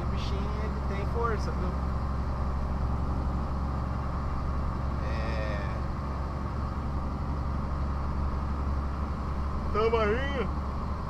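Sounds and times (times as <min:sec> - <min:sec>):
truck diesel engine drone: 0:00.0 - 0:11.0.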